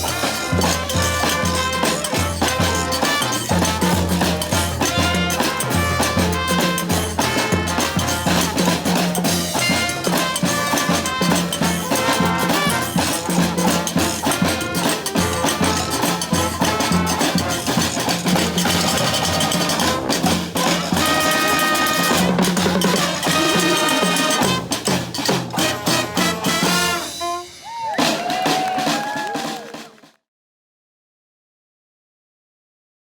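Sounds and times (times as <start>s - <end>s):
brass band playing: 0.0s - 30.0s.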